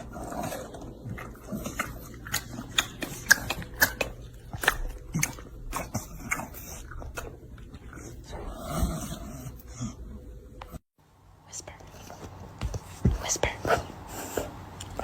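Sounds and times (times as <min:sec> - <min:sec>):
dog chewing with crunching clicks: 0:00.0 - 0:08.2.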